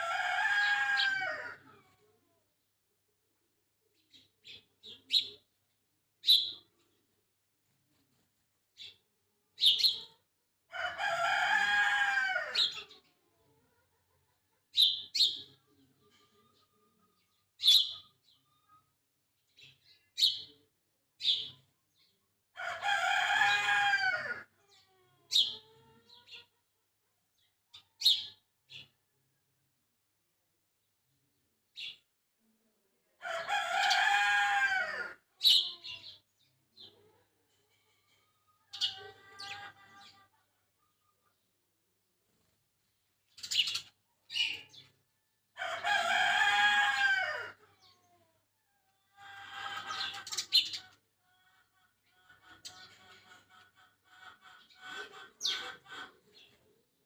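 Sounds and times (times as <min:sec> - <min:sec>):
rooster crowing: 0:00.0 - 0:01.6, 0:10.7 - 0:12.7, 0:22.6 - 0:24.5, 0:33.2 - 0:35.2, 0:45.6 - 0:47.6.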